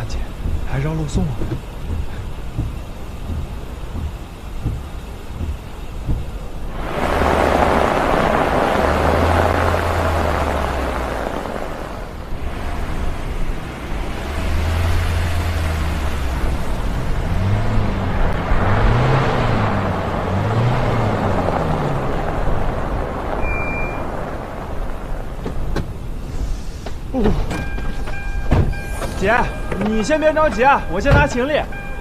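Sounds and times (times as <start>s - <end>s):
road and wind noise: 0.0s - 32.0s
short high beep: 23.4s - 24.0s, 27.6s - 32.0s.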